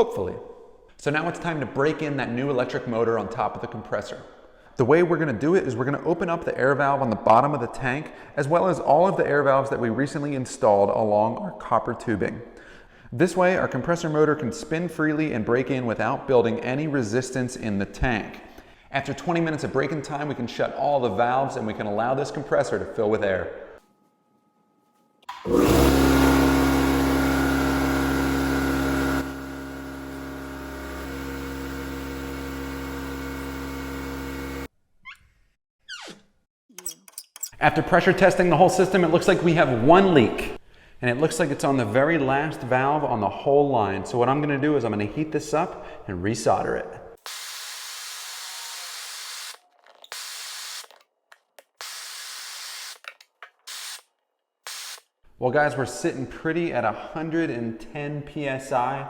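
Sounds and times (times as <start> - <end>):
air compressor running: 25.3 - 34.7, 47.2 - 51.0, 51.8 - 53.1, 53.7 - 54.0, 54.6 - 55.0.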